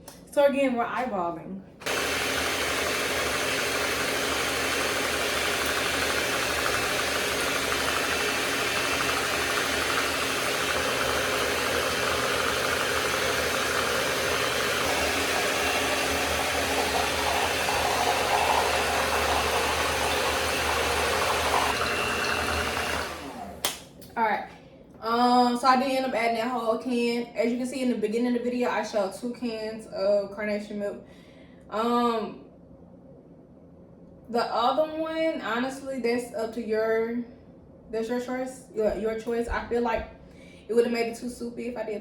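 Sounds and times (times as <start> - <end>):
electric mixer running: 1.8 - 23.7.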